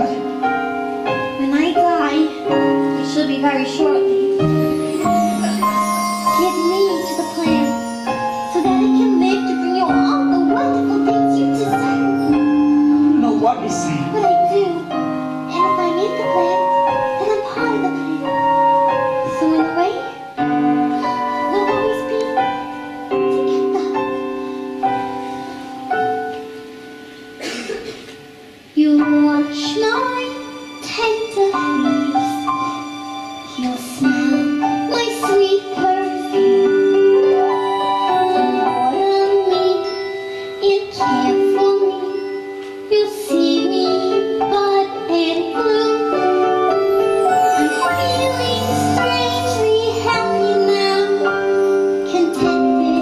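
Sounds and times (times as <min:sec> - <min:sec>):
instrumental accompaniment: 0:00.0 - 0:53.0
piano playing slow chords: 0:00.0 - 0:53.0
young woman singing ballad: 0:40.6 - 0:46.3.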